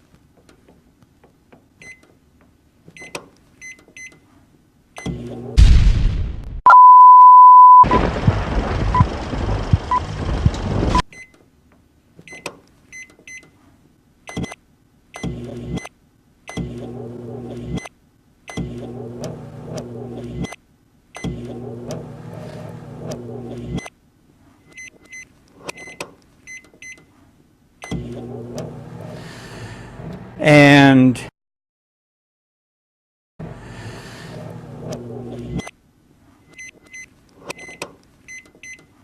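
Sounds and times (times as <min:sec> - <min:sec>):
microwave oven humming: 0:04.9 - 0:05.6, 0:15.2 - 0:17.9, 0:18.5 - 0:24.0, 0:27.8 - 0:31.0, 0:33.4 - 0:35.8
loud burst of noise: 0:07.8 - 0:11.0.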